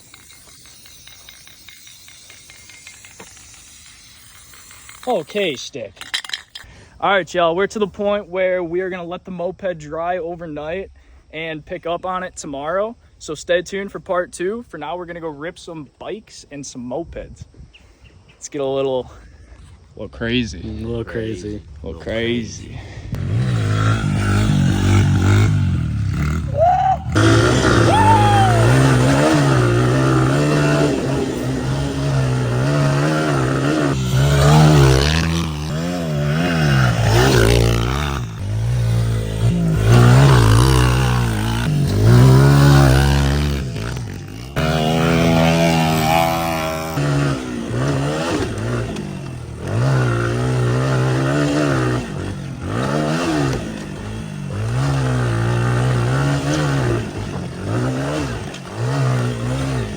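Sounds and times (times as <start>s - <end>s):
small motorbike engines revving: 0.0s - 7.1s, 19.5s - 59.9s.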